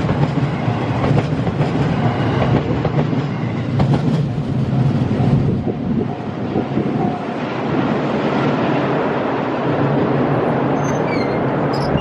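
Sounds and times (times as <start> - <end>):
train wheels rumbling on rails: 0.0 - 12.0
high squeaks: 10.8 - 12.0.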